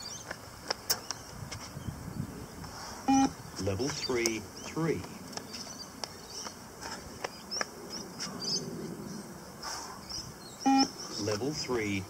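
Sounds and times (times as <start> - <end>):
faint high chirps: 3.1 - 3.4, 10.0 - 11.2
short electronic beep: 3.1 - 3.4, 10.7 - 10.9.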